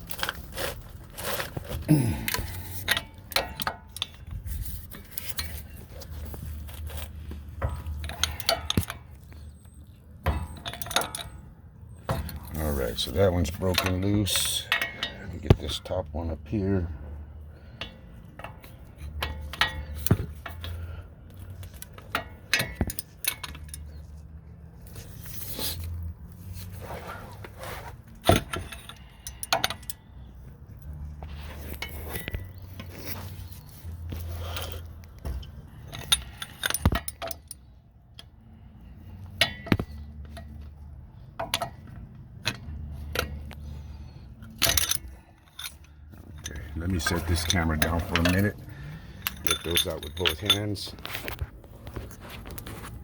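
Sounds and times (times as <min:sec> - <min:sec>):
ratchet clicking on metal bolts: 0:02.2 - 0:04.2, 0:06.7 - 0:11.5, 0:34.2 - 0:38.3, 0:41.4 - 0:50.9.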